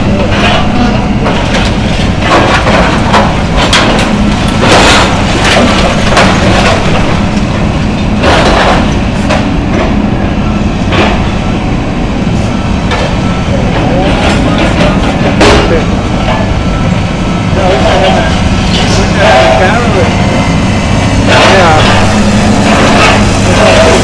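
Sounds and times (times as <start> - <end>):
excavator engine running: 0.0 - 24.0
debris crashing and cracking: 0.2 - 10.0, 13.9 - 15.9, 21.3 - 24.0.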